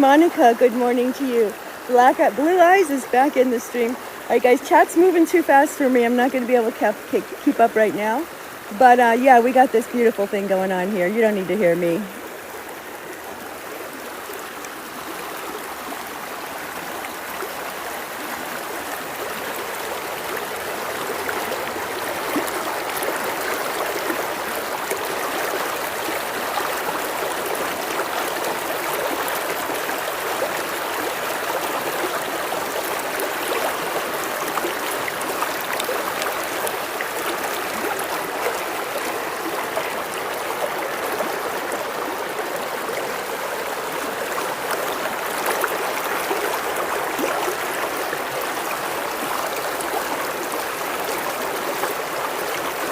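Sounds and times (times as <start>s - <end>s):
river water flowing: 0.0s - 52.9s.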